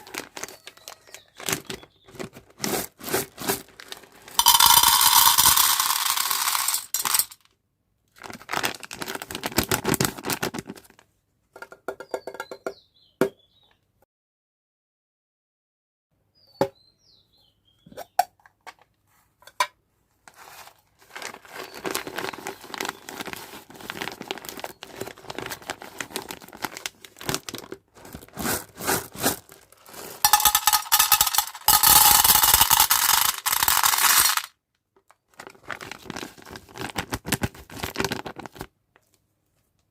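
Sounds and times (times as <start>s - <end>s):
wrappers crinkling and tearing: 0.0s - 4.4s, 8.2s - 11.0s, 20.4s - 30.2s, 35.3s - 38.7s
hard candies clinking: 4.3s - 7.4s, 29.2s - 34.5s.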